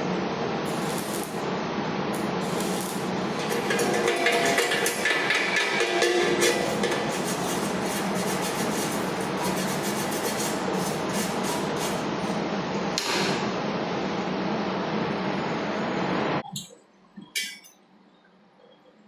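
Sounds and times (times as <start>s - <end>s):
welding arc crackling: 0.4s - 12.4s.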